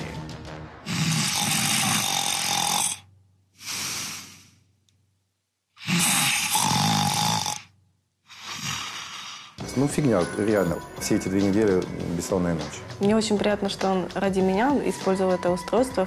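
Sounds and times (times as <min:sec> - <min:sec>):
man snoring: 0:00.8 - 0:04.6, 0:05.8 - 0:09.6
soft breath out: 0:03.6 - 0:04.7.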